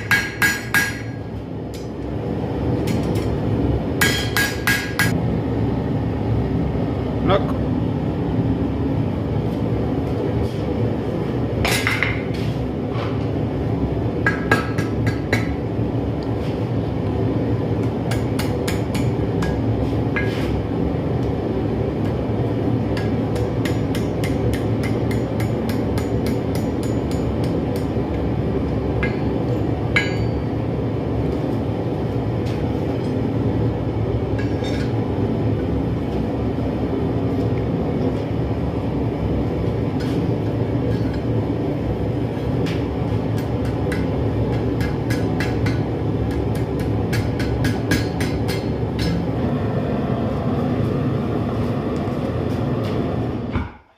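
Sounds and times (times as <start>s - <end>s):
hammer on anvil: 0.0s - 1.9s, 4.0s - 5.2s, 14.2s - 15.6s, 18.1s - 19.6s, 23.0s - 27.9s, 29.0s - 30.5s, 43.4s - 49.3s
steady low hum: 0.0s - 53.9s.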